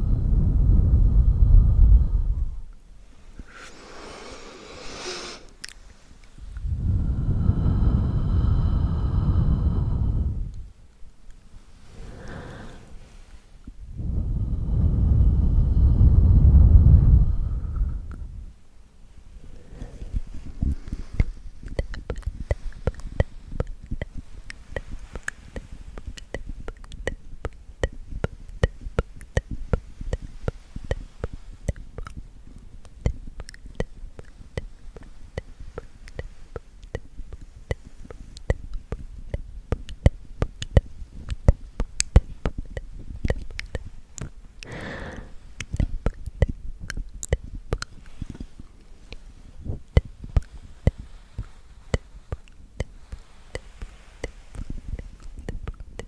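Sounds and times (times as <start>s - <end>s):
breathy sound: 0.0s - 2.7s, 3.4s - 10.8s, 11.6s - 18.5s, 44.6s - 45.9s
low rubbing rumble: 0.0s - 2.7s, 6.2s - 10.9s, 11.5s - 18.6s.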